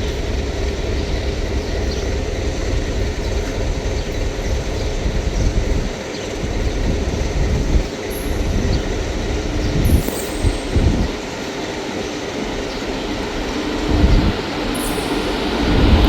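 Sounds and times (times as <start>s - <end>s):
train rumbling past: 0.0s - 16.0s.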